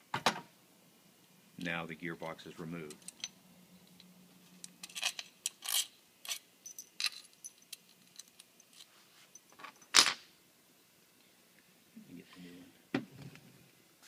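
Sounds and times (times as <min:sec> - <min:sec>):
metal tools clinking: 0:04.8 - 0:10.2.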